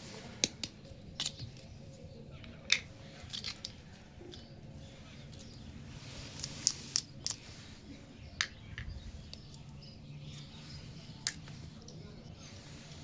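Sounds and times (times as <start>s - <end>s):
low background noise: 0.0s - 13.0s
plastic toy pieces clicking: 0.4s - 1.7s, 2.4s - 4.5s.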